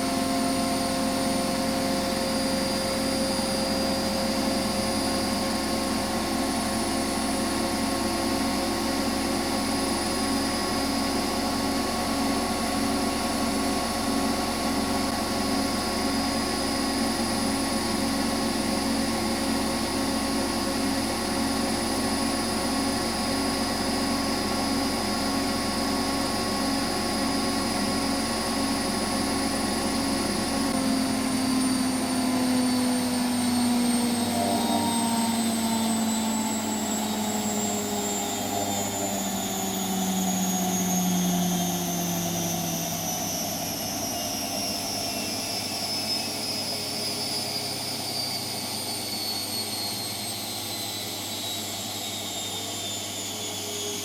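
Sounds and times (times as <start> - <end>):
washing machine spinning: 0.0 - 46.2.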